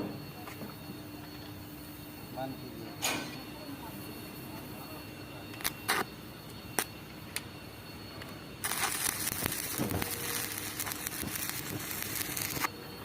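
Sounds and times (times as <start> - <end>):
arc welding crackling hiss: 5.6 - 6.1, 8.6 - 13.0.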